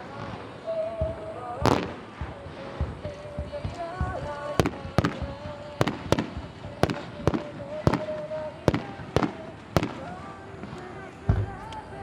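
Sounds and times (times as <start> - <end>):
faint music: 0.0 - 12.0
fireworks bursting: 0.0 - 12.0.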